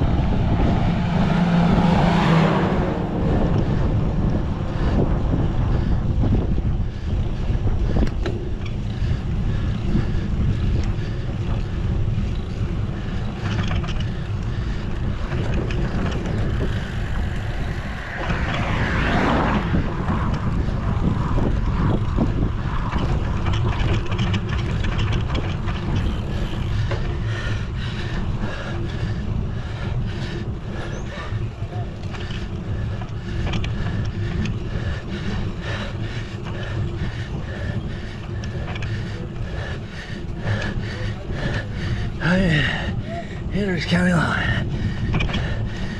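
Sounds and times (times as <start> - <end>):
wind buffeting microphone: 0.0 - 45.9.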